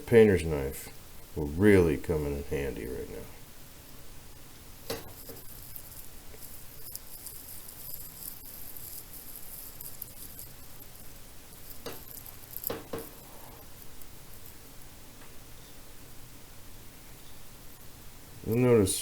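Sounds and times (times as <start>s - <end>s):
faint steady hiss: 0.0s - 19.0s.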